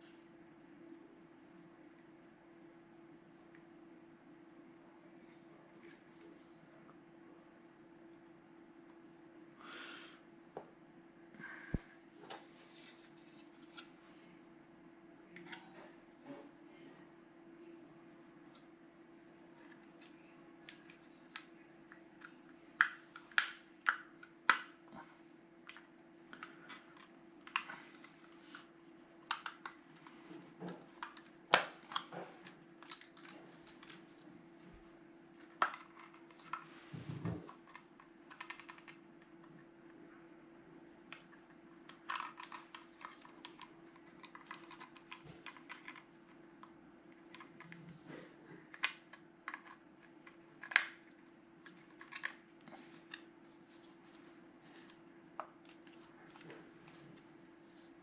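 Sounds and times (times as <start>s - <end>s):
faint steady hum: 0.0s - 58.0s
plastic parts clicking and tapping: 29.2s - 34.1s, 35.4s - 36.6s, 37.5s - 39.3s, 41.1s - 46.7s, 48.7s - 52.4s.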